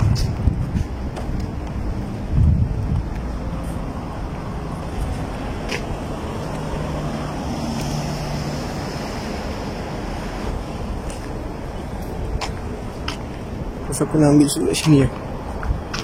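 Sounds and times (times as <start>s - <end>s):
wind on microphone: 0.0s - 6.9s.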